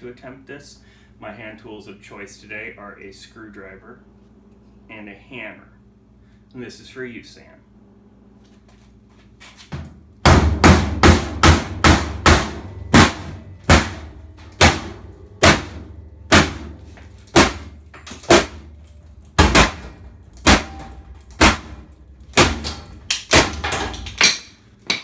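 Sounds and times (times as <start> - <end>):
hammer blows on sheet metal: 10.2 - 18.8, 19.4 - 24.4.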